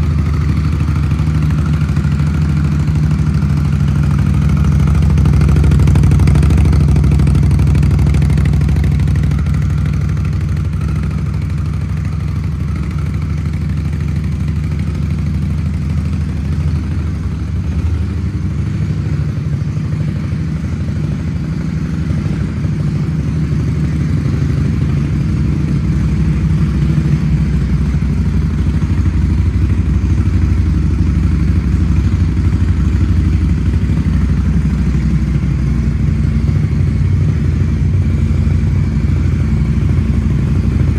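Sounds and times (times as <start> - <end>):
motorcycle engine idling: 0.0 - 40.9.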